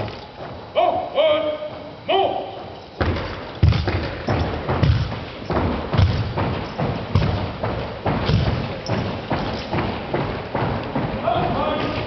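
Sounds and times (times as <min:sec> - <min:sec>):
boots stamping on floor: 0:01.6 - 0:12.0.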